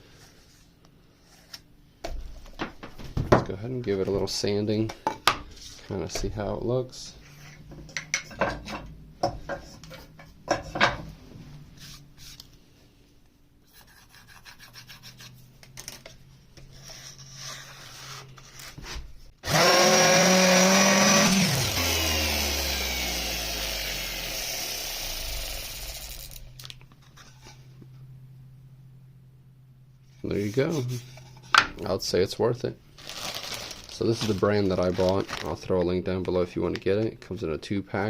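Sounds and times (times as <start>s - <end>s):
random orbital sander running: 19.4s - 26.4s.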